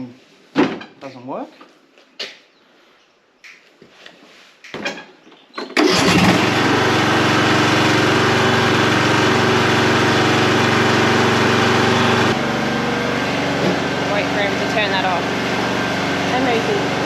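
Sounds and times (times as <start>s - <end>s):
small petrol engine running: 5.8s - 17.0s.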